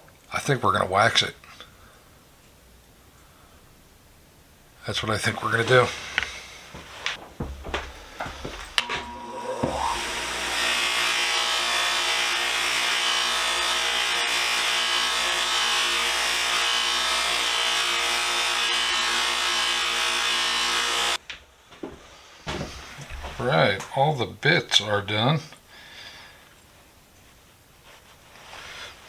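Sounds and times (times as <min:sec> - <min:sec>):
electric power tool motor: 0:07.8 - 0:21.2.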